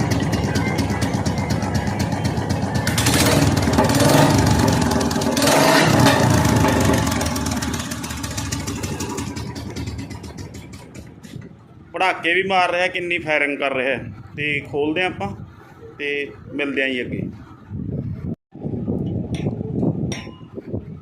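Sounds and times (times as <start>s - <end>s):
single-cylinder engine revving: 0.0s - 11.5s
engine popping: 0.0s - 11.9s.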